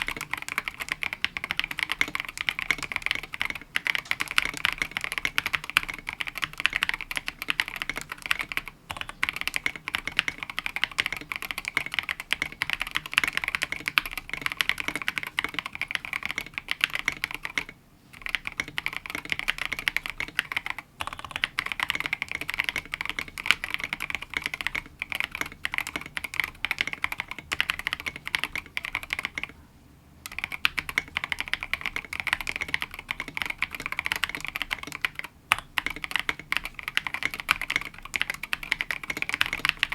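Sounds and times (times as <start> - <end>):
mechanical keyboard typing: 0.0 - 29.6, 30.2 - 39.9.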